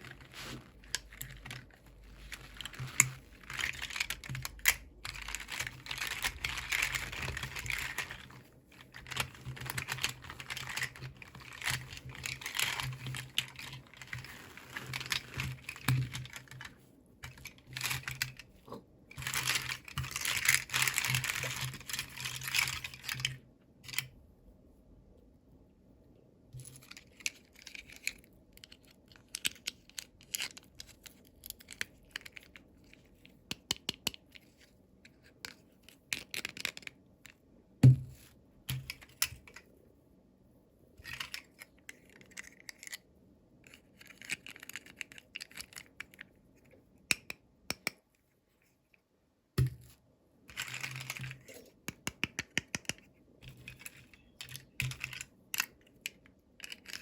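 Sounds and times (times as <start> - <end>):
wrapping rustling and tearing: 0.0 - 18.4.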